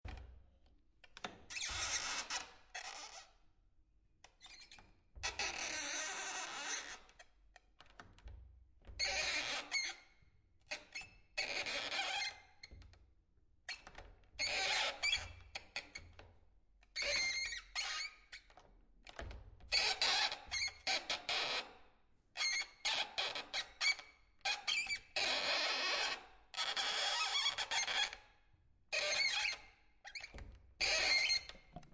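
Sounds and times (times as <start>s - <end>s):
door handle squeaking: 29.1s - 31.9s.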